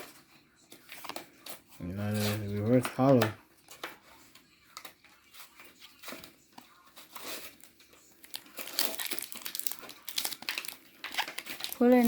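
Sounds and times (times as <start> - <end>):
foil pack crinkling: 5.2 - 12.0.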